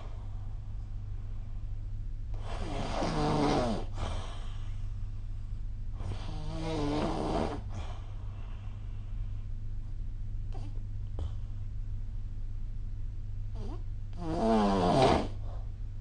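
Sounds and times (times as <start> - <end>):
steady low hum: 0.0 - 16.0
person snoring: 2.4 - 4.3, 6.0 - 7.7, 13.6 - 15.4.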